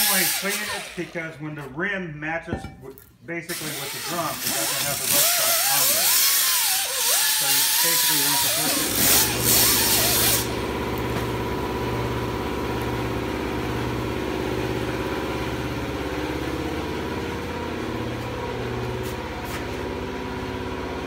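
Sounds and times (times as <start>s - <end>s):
machine motor humming and throbbing: 3.7s - 21.0s.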